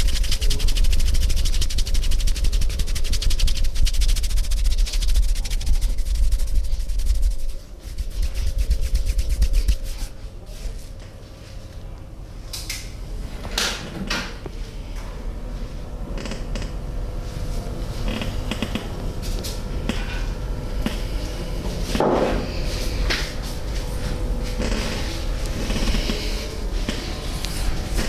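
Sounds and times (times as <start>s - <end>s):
hands rubbing and patting body: 0.0s - 10.2s.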